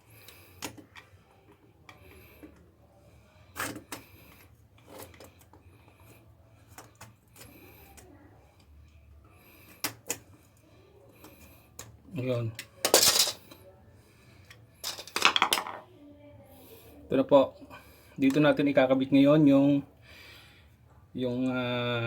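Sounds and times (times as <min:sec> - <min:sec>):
plastic and metal clicks and knocks: 0:00.6 - 0:02.6.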